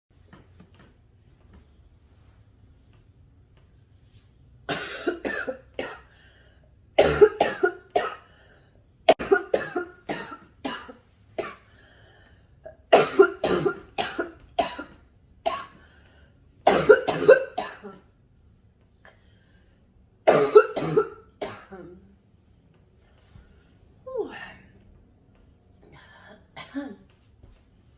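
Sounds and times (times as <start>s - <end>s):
person coughing hard: 4.7s - 6.1s, 7.0s - 8.3s, 9.1s - 11.6s, 12.9s - 15.8s, 16.7s - 18.0s, 20.3s - 21.9s.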